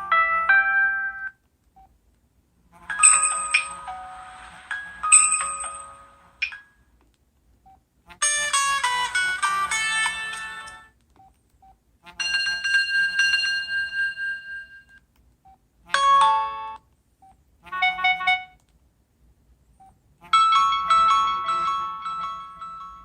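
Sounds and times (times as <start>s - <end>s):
phone ringtone melodies: 0.0s - 1.4s, 2.8s - 6.8s, 8.2s - 10.9s, 12.2s - 15.0s, 16.0s - 16.8s, 17.7s - 18.6s, 20.3s - 23.0s.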